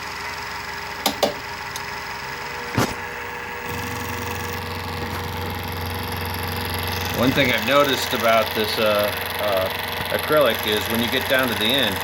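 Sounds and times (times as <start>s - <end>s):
mini mill running: 0.0s - 12.0s
deeper hum: 2.2s - 11.2s.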